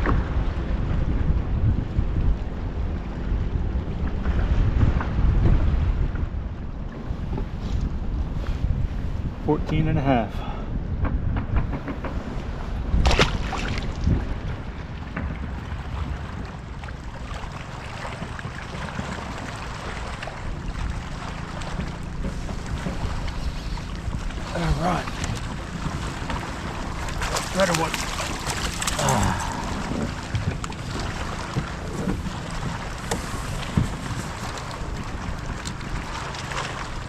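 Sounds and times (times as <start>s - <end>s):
water lapping against kayak: 0.0s - 9.5s, 10.2s - 37.0s
wind buffeting microphone: 0.0s - 37.0s.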